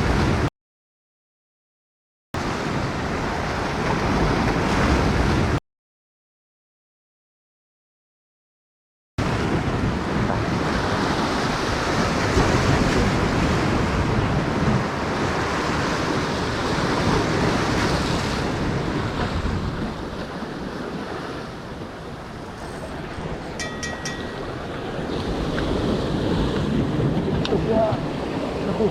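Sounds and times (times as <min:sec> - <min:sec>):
waves breaking: 0:02.4 - 0:05.6, 0:09.2 - 0:28.9
wind buffeting microphone: 0:09.2 - 0:28.9.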